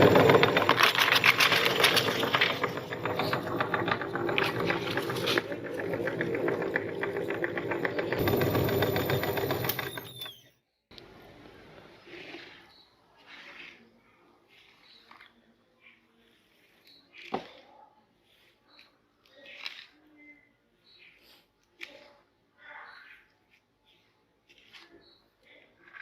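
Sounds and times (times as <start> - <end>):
meat grinder crunching cookies: 0.0 - 10.5.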